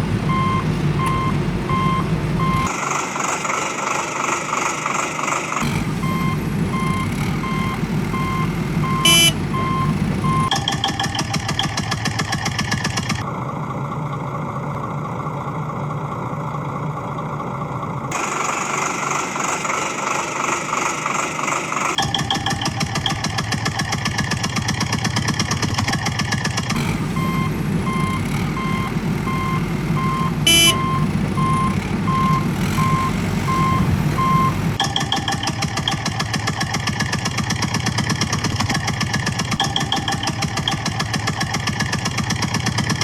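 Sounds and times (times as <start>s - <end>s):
diesel engine chugging: 0.0s - 43.0s
reversing alarm beeping: 0.3s - 2.7s, 5.6s - 10.5s, 26.8s - 34.8s.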